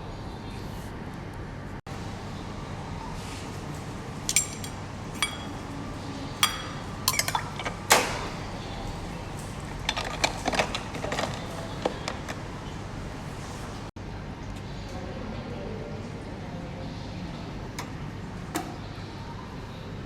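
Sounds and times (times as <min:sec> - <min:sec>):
metal portafilter clinking: 0:03.7 - 0:13.2.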